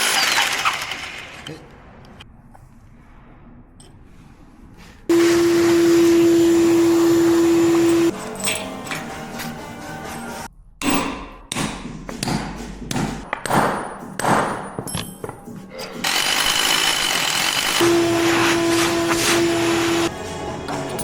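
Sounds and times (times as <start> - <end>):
hydraulic power unit whirring: 5.1 - 8.3, 15.9 - 20.1
metal knocks and clanks: 10.8 - 16.0.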